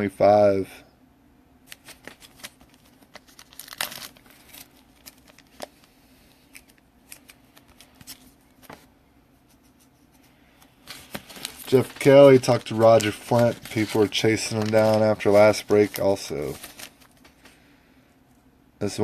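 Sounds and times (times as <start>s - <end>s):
plastic sleeves crinkling: 1.6s - 8.9s, 10.5s - 17.6s
packaging rustle: 1.7s - 8.9s, 10.7s - 17.6s.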